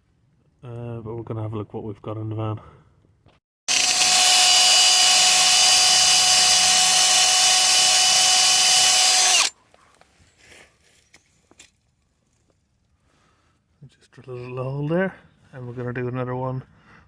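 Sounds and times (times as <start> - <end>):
power drill whining: 3.7 - 9.6.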